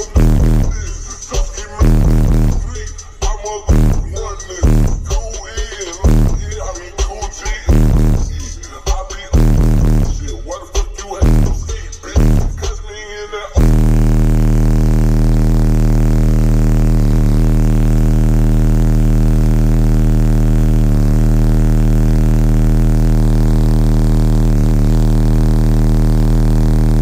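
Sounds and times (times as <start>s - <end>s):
deep buzzy bass tone: 0.0s - 3.0s, 3.7s - 5.3s, 6.0s - 6.8s, 7.6s - 8.6s, 9.4s - 10.5s, 11.2s - 12.8s, 13.6s - 27.0s.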